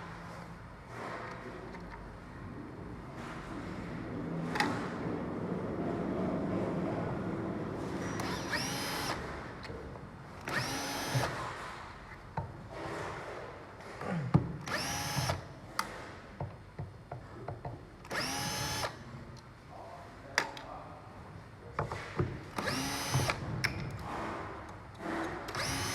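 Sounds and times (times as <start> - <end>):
electric screwdriver whining: 10.5 - 11.3, 14.7 - 15.4, 18.1 - 19.0, 22.6 - 23.4, 25.6 - 25.9.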